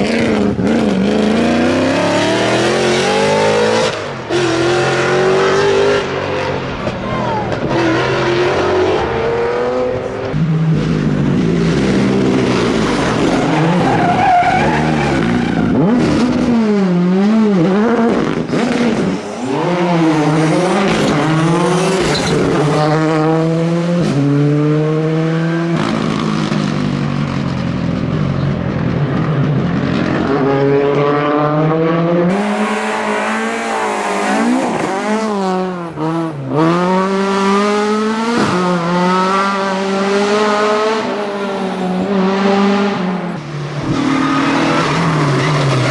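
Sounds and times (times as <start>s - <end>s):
rally car engines revving: 0.0s - 45.9s.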